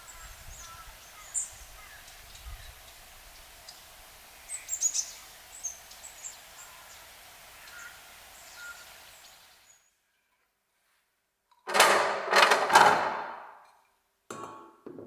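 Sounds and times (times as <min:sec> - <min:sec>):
steady hiss: 0:00.0 - 0:09.9
small birds chirping: 0:00.0 - 0:10.0.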